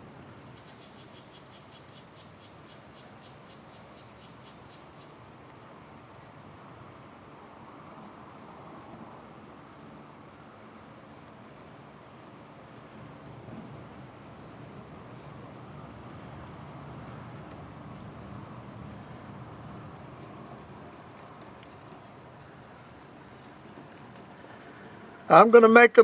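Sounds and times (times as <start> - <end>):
insect trilling: 9.1 - 19.2.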